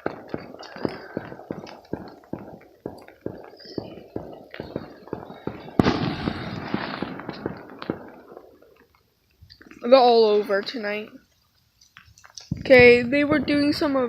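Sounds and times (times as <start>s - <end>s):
firework bang: 0.0s - 8.6s
crackling fizz: 0.0s - 14.0s
fireworks popping: 0.0s - 14.0s.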